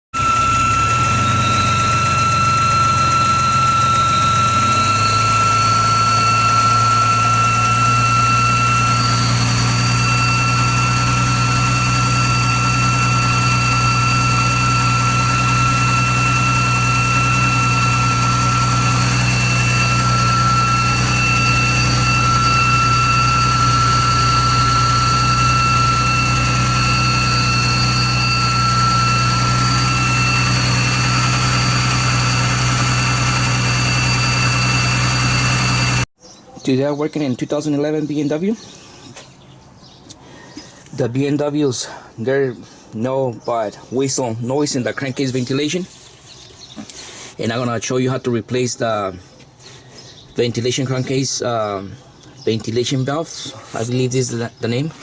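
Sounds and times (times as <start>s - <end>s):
car engine idling: 0.1s - 36.1s
high-pitched whistle: 0.1s - 36.1s.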